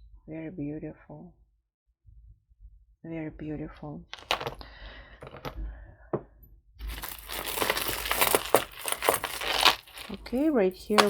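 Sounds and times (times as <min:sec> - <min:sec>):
small metal clinks and rustling: 0:04.2 - 0:04.6, 0:06.9 - 0:11.0
jewelry clicking: 0:06.9 - 0:11.0.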